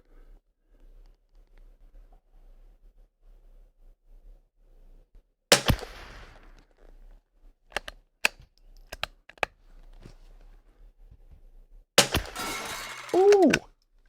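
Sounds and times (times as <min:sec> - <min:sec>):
rifle shot with echo: 0:05.5 - 0:06.4.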